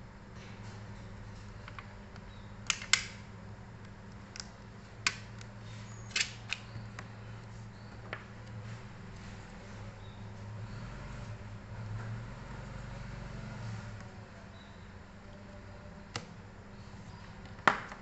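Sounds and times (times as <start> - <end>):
steady low hum: 0.0 - 18.0
small plastic parts clicking: 2.6 - 3.2.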